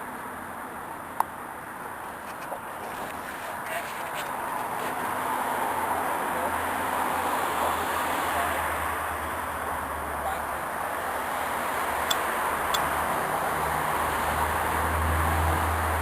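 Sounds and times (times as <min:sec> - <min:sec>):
street traffic passing: 0:00.0 - 0:16.0
sharp clicks: 0:12.0 - 0:12.9.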